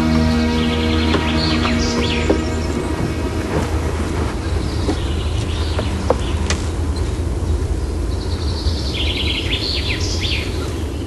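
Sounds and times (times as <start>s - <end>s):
birds chirping: 0.0s - 11.0s
low background rumble: 0.0s - 11.0s.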